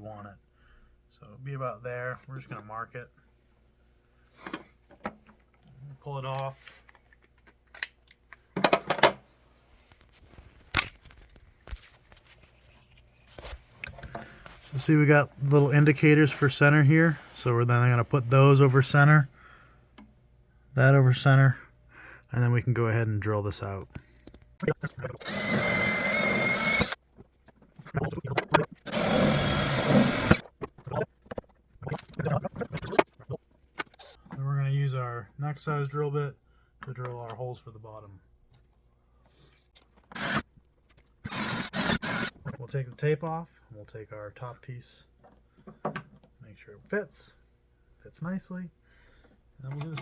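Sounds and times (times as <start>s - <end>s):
power drill boring: 25.2s - 27.0s, 28.8s - 30.4s, 40.1s - 40.4s, 41.2s - 42.4s.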